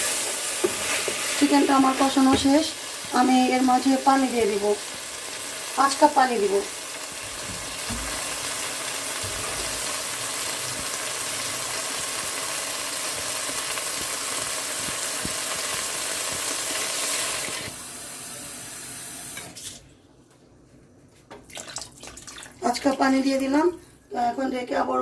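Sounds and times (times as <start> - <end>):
water pouring into a pot: 21.5 - 22.8.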